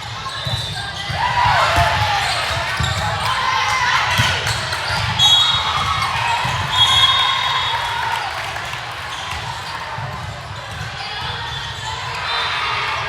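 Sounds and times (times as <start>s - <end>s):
sneakers squeaking on court: 0.1s - 3.4s.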